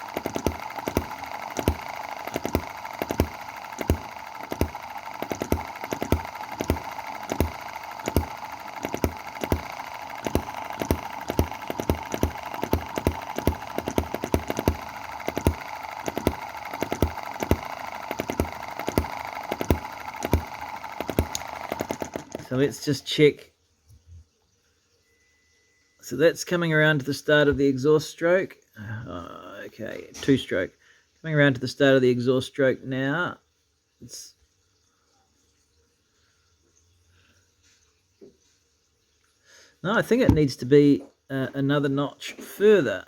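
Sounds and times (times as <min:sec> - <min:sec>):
model engine beating: 0:00.0 - 0:23.1, 0:40.0 - 0:40.6.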